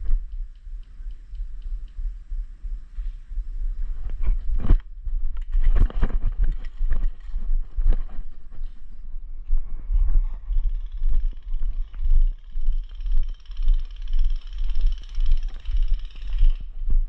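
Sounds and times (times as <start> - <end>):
footsteps walking: 2.9 - 10.5, 16.7 - 17.0.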